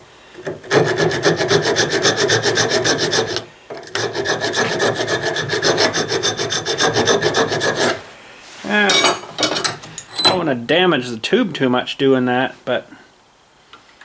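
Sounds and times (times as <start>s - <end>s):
hand file scraping metal: 0.4s - 8.1s.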